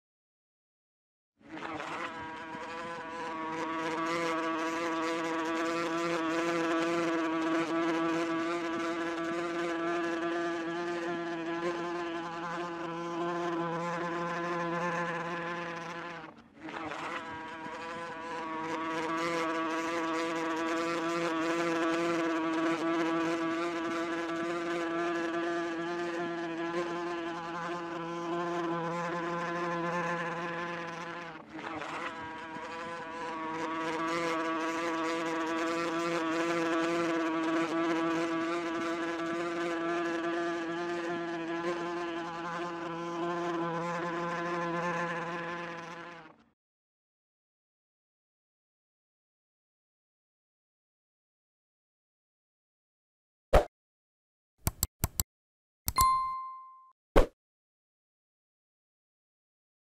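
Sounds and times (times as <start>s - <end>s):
wasp buzzing in flight: 1.5s - 46.4s.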